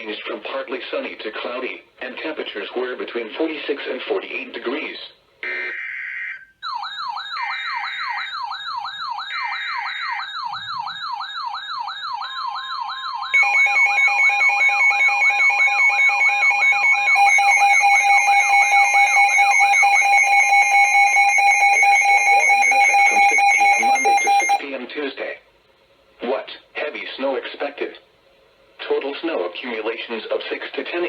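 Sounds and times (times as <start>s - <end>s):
steady attention tone: 13.2s - 24.6s
warbling alert tone: 13.3s - 24.6s.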